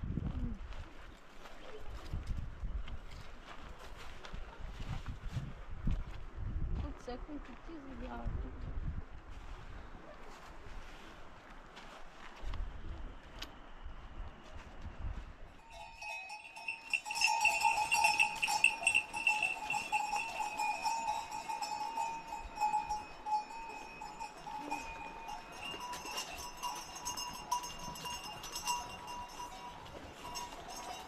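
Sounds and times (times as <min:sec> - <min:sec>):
livestock bells jangling: 0:15.6 - 0:31.0.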